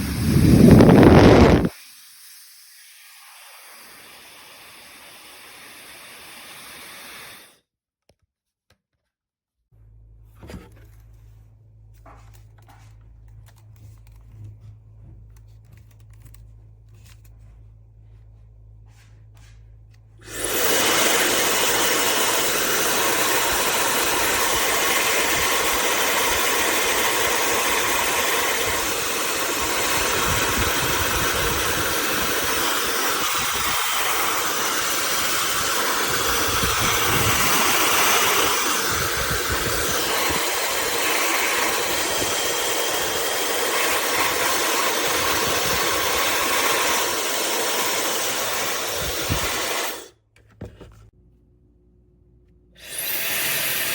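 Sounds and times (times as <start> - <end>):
hair dryer blowing: 0.0 - 7.6, 20.2 - 50.2, 52.8 - 53.9.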